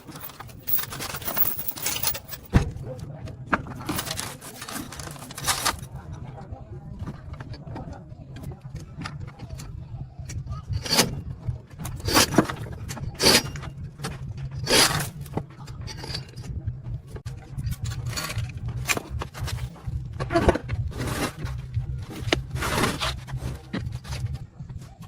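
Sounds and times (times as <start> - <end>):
metal tools scraping and clinking: 0.0 - 2.5, 3.8 - 5.9, 13.2 - 13.7, 14.6 - 15.2, 15.8 - 16.4.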